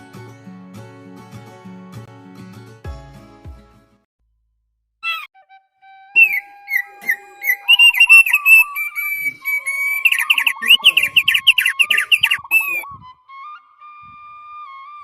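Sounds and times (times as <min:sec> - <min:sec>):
sharp bird chirps: 0:06.2 - 0:12.8
songbird singing: 0:06.2 - 0:13.0.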